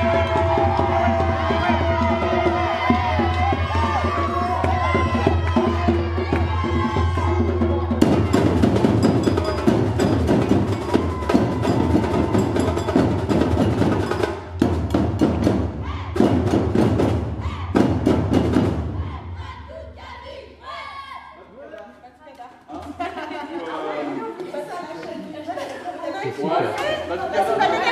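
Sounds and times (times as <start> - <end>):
fast dense drum rhythm: 0.0 - 18.9
voices singing: 18.9 - 21.2.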